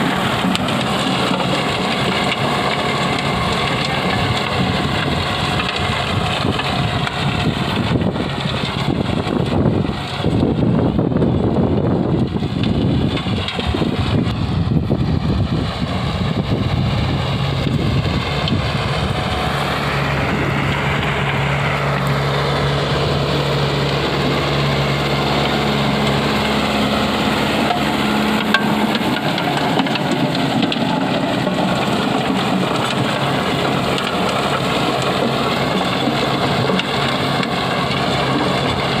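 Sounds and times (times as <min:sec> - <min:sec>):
tractor diesel engine running: 0:00.0 - 0:39.0.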